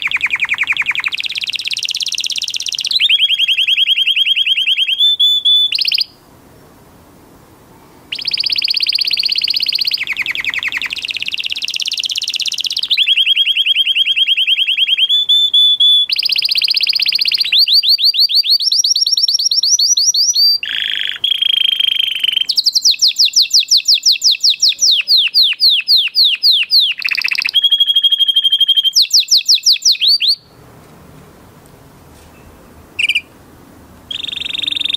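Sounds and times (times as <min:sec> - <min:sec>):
canary singing trills: 0:00.0 - 0:06.2, 0:08.1 - 0:30.6, 0:32.3 - 0:33.4, 0:34.1 - 0:34.9.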